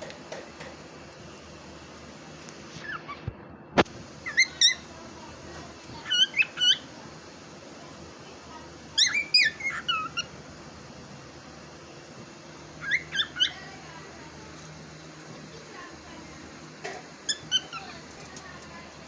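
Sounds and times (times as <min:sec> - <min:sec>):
cockatiel chirping: 0:04.2 - 0:04.9, 0:06.0 - 0:06.9, 0:09.0 - 0:10.3, 0:12.8 - 0:13.6, 0:17.3 - 0:18.0.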